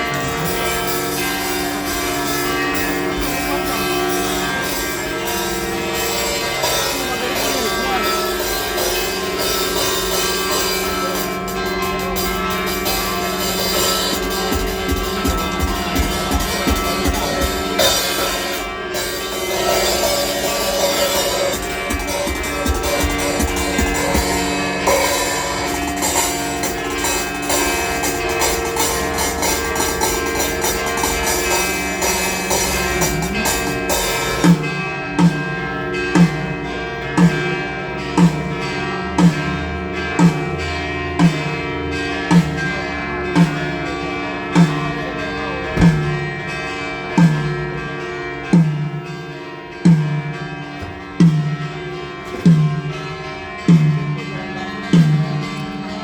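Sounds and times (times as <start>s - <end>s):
low drum hits: 45.8s - 46.4s.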